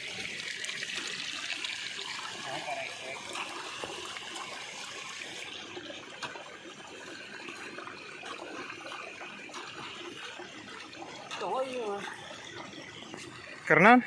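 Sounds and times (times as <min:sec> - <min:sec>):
running water hiss: 0:00.0 - 0:05.9.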